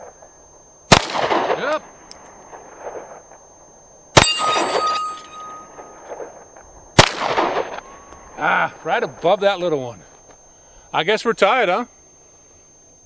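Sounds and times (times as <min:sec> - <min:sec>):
steel plate ringing: 0:04.2 - 0:06.1
handgun shots: 0:07.0 - 0:07.7.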